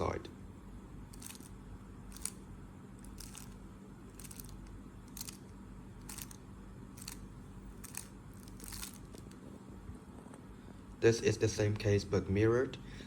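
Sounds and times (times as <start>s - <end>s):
faint low hum: 0.0s - 13.0s
puzzle cube turning clacks: 1.1s - 1.5s, 2.1s - 2.4s, 3.0s - 6.4s, 7.0s - 9.3s.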